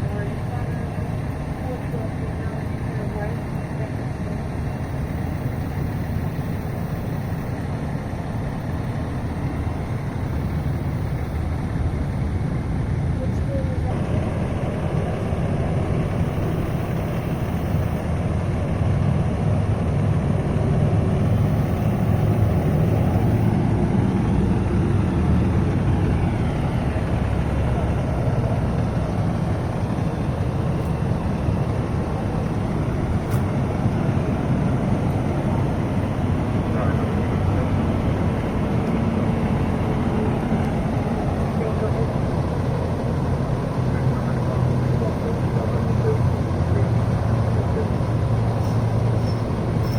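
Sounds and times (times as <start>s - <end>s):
diesel engine idling: 0.0s - 49.9s.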